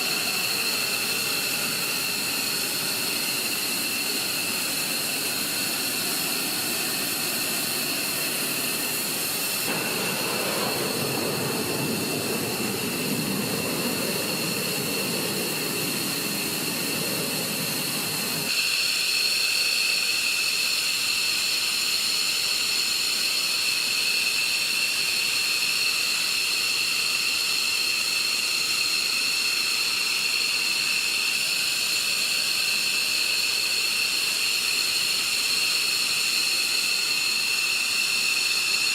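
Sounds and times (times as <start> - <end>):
jet engine rushing hiss: 0.0 - 19.0
jet engine high-pitched whine: 0.0 - 38.9.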